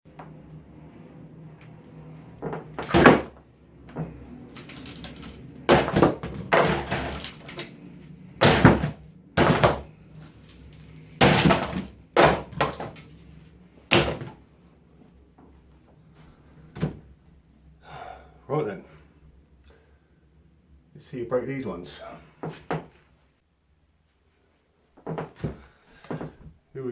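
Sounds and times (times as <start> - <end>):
hard objects knocking and clattering: 2.4 - 7.7, 11.2 - 13.0.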